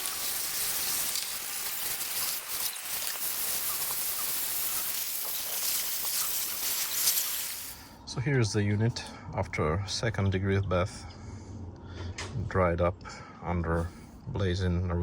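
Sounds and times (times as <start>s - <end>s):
crackling hiss of hot water: 0.0s - 7.9s.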